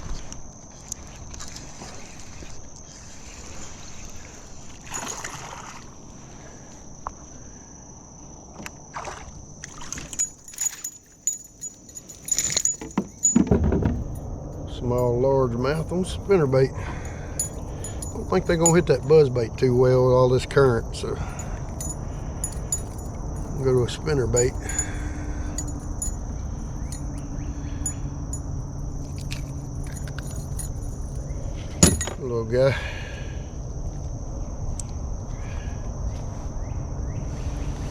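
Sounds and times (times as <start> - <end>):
high insect drone: 0.0 - 37.9
thin high hum: 8.3 - 37.9
knocks against kayak: 13.4 - 14.1.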